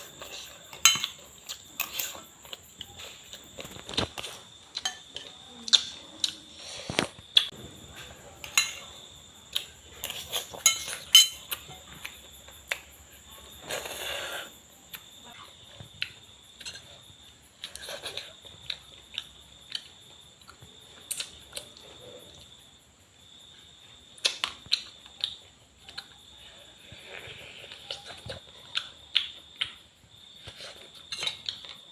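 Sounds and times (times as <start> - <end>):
utensils clinking against dishes: 0.3 - 1.2, 8.4 - 9.0, 10.0 - 11.9.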